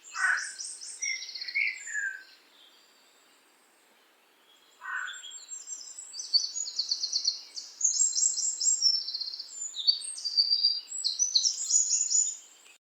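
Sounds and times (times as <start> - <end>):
songbird trilling: 0.1 - 2.3, 4.8 - 12.4.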